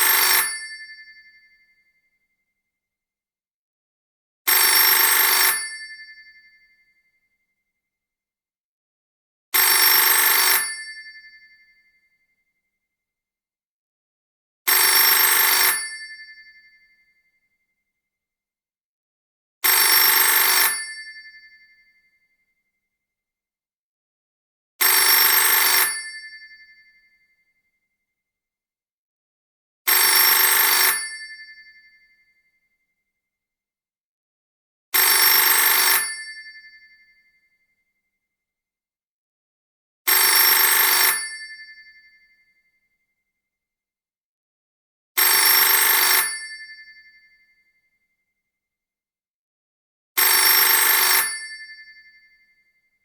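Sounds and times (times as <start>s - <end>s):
telephone bell ringing: 0.0s - 0.9s, 4.5s - 5.9s, 9.6s - 11.0s, 14.7s - 16.2s, 19.8s - 21.1s, 24.8s - 26.2s, 29.9s - 31.4s, 35.0s - 36.4s, 40.1s - 41.5s, 45.2s - 46.7s, 50.2s - 51.7s.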